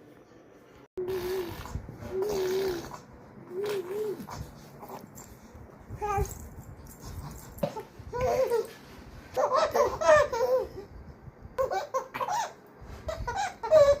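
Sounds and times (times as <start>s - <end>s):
baby giggling: 9.4s - 10.9s.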